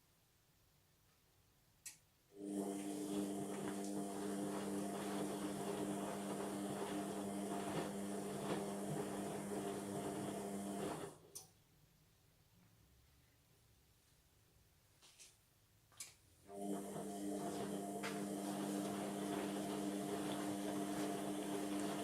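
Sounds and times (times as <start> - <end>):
washing machine motor humming: 2.4 - 11.3, 16.5 - 22.0.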